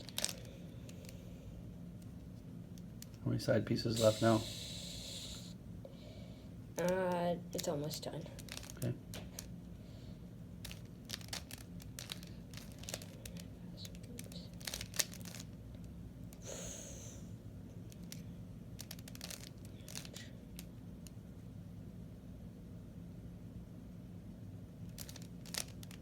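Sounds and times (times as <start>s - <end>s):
brief hiss: 4.0s - 5.5s
puzzle cube clicking as it turns: 24.9s - 26.0s.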